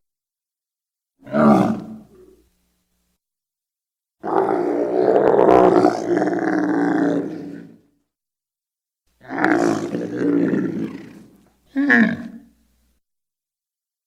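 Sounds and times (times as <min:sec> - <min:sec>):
dinosaur bellowing call: 0:01.2 - 0:02.4, 0:04.2 - 0:07.9, 0:09.2 - 0:12.5.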